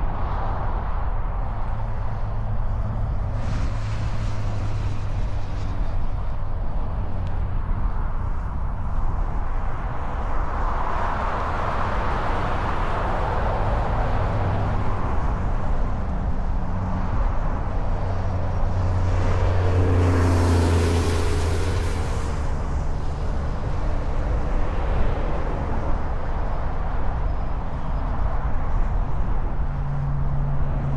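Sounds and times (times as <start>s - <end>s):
road traffic rumble: 14.0s - 25.7s
vehicle engine whine: 15.6s - 25.4s.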